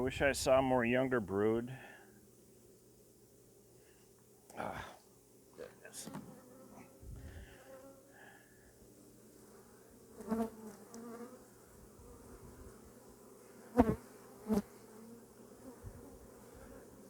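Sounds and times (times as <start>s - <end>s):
bees buzzing: 5.8s - 17.0s.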